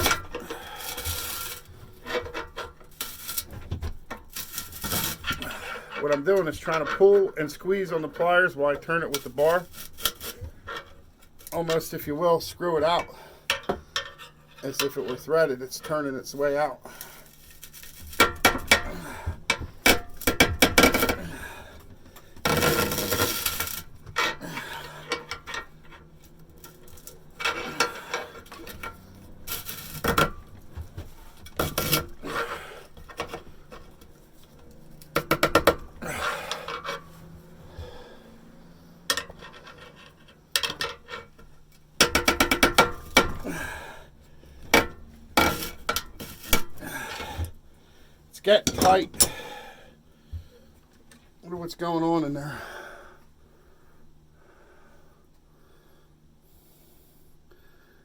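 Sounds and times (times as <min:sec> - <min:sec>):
metal grinding and scraping: 0:00.0 - 0:47.6, 0:48.3 - 0:49.7
tools clinking: 0:17.0 - 0:37.2, 0:39.0 - 0:43.8.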